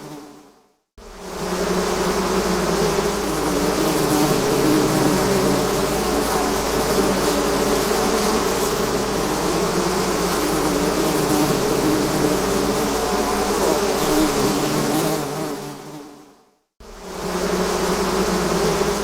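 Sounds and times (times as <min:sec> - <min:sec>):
swarm of bees buzzing: 0:00.0 - 0:16.2, 0:16.8 - 0:19.0.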